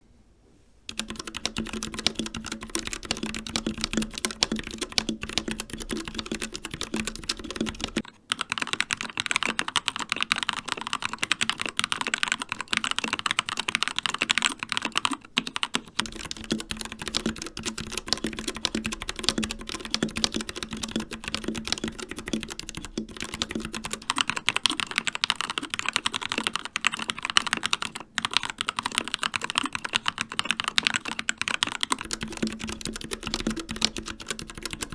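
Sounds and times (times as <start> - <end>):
fast typing on mechanical keyboards: 0.9 - 34.9.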